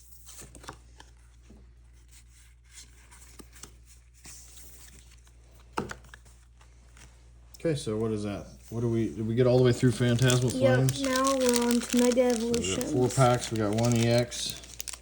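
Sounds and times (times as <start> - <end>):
cards being sorted: 9.4 - 15.0.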